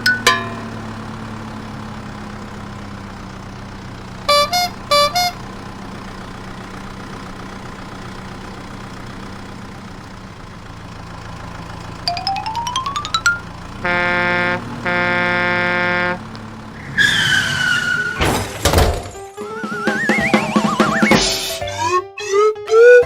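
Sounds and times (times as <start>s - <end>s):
short rising chime notes: 0.0s - 1.0s, 12.1s - 13.7s
low engine hum: 0.0s - 18.0s
cartoon horn double toots: 4.3s - 5.4s, 13.8s - 16.2s.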